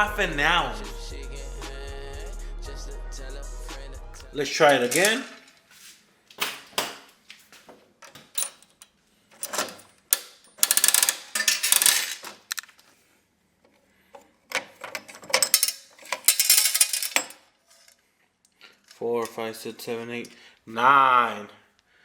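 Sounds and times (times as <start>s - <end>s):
candies rattling into metal chute: 4.6s - 5.5s, 9.4s - 12.6s, 14.8s - 17.4s
vending mechanism clicking: 9.4s - 12.6s.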